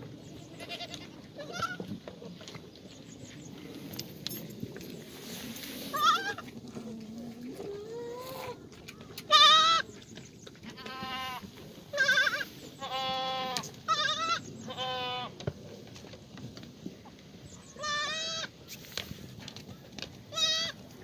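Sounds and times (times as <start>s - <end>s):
goats bleating: 0.5s - 1.9s, 5.9s - 6.5s, 9.2s - 9.8s, 10.8s - 15.3s, 17.8s - 18.5s, 20.3s - 20.8s.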